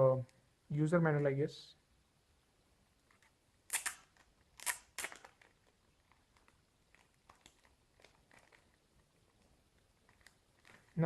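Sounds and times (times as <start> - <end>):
paper pages rustling: 3.1 - 11.0.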